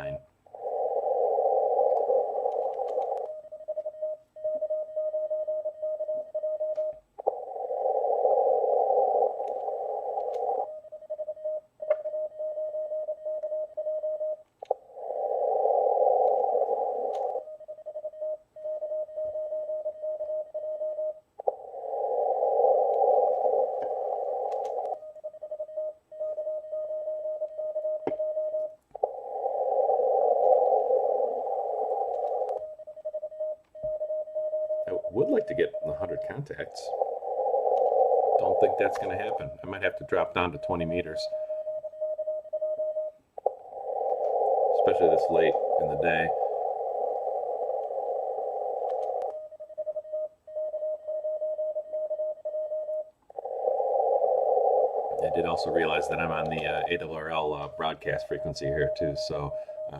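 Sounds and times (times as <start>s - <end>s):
morse code tone: 30.5s - 53.1s, 54.8s - 59.9s
hissing radio band noise: 34.9s - 41.3s, 43.4s - 49.3s, 53.4s - 59.9s.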